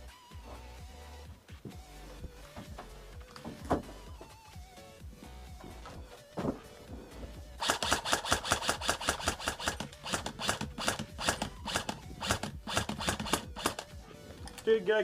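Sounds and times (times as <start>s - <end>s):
airsoft gun rapid shots: 7.6s - 13.9s.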